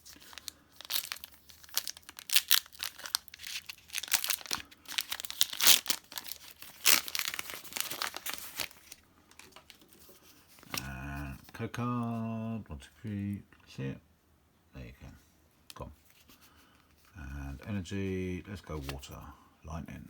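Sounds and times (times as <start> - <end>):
foil wrapper tearing and crinkling: 0.0 - 9.6.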